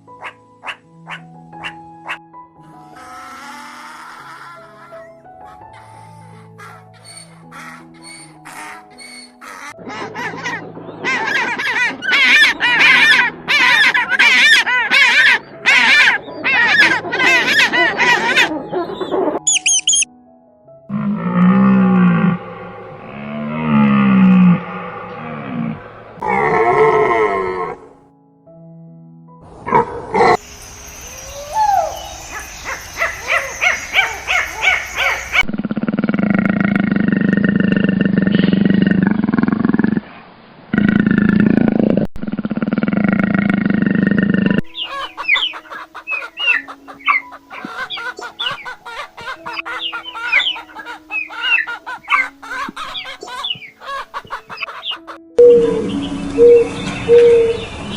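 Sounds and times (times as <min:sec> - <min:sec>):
animal calls: 0:00.2 - 0:20.1, 0:20.9 - 0:28.0, 0:31.0 - 0:40.0, 0:40.8 - 0:57.9
waterfowl honking: 0:05.4 - 0:20.0, 0:32.3 - 0:35.5, 0:44.6 - 0:57.7
pulsing growl-like sound: 0:20.9 - 0:26.8, 0:35.5 - 0:40.0, 0:40.7 - 0:44.6.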